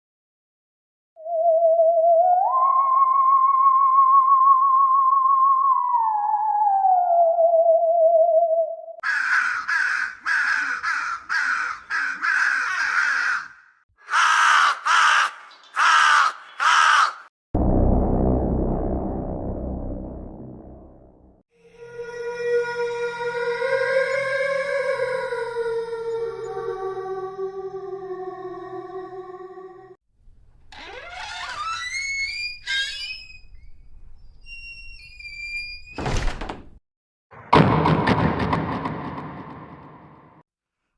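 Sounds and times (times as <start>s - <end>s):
high whistle-like tones: 1.2s - 8.8s
harsh cawing bird calls: 9.0s - 17.3s
rising synthetic swoop: 17.6s - 21.4s.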